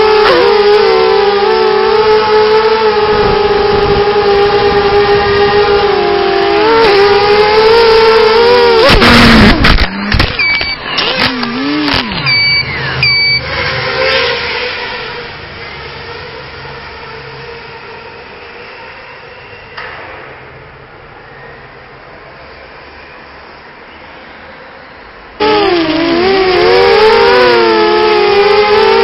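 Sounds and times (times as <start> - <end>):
drone motors whining: 0.0 - 19.8, 25.4 - 29.0
short high beeps: 10.0 - 11.0, 11.9 - 13.5.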